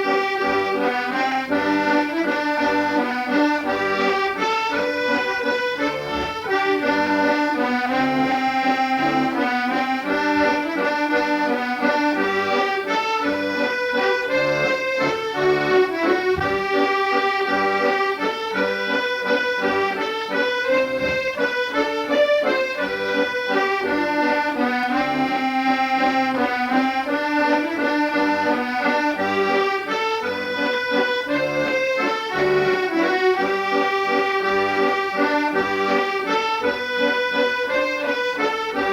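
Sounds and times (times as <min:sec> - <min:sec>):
accordion playing a tune: 0:00.0 - 0:38.9.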